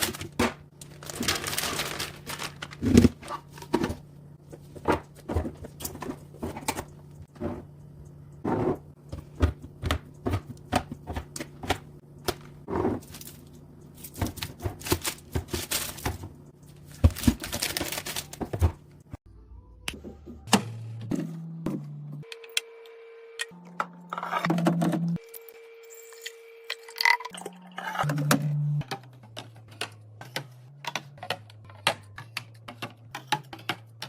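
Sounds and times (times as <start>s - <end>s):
food packages clicking and knocking: 0.0s - 7.0s, 9.0s - 19.0s, 28.8s - 34.0s.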